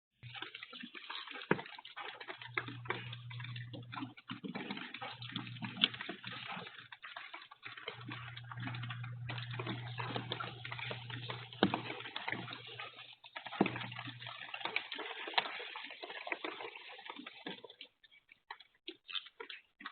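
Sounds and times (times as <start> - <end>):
low hum: 7.9 - 12.9.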